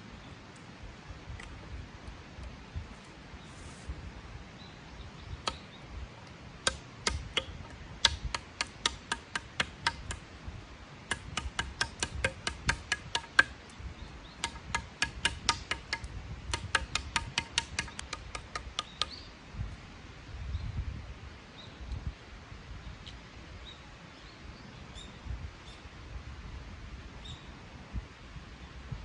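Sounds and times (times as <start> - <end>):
sharp woody knocks: 6.6 - 10.2, 11.1 - 13.6, 14.4 - 19.1.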